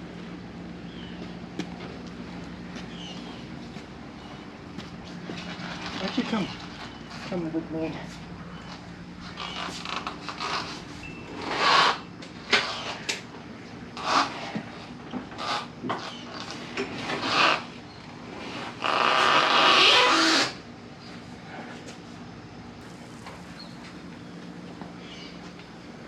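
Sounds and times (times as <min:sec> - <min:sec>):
scraping or rustling: 0:08.6 - 0:13.2.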